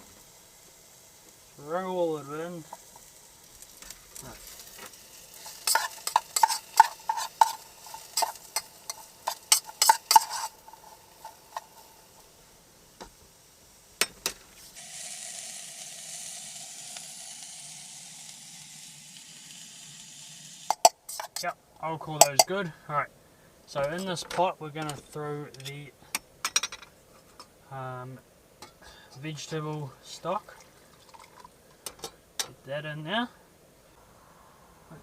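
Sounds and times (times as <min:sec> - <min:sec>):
vegetables sizzling: 0:00.0 - 0:32.6
utensil scraping metal pan: 0:04.2 - 0:12.0, 0:20.7 - 0:21.5.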